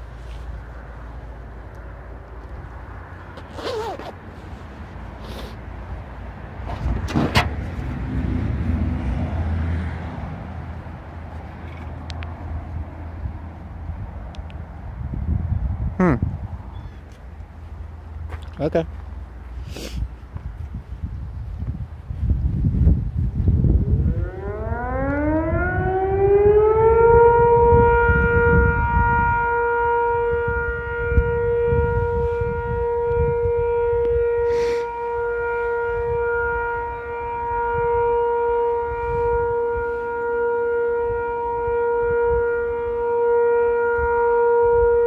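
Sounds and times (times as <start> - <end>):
tornado siren wailing: 23.5 - 45.0.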